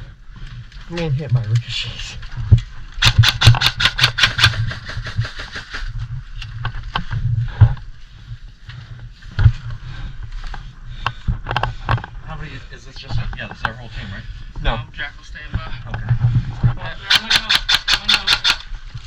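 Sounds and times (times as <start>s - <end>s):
steady low rumble: 4.2s - 17.1s.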